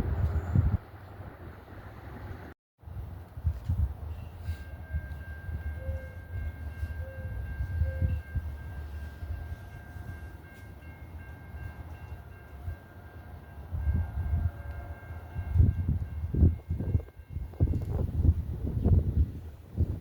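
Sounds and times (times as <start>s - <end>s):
wind gusts on microphone: 0.0s - 8.7s, 13.6s - 20.0s
commuter train running past: 0.0s - 20.0s.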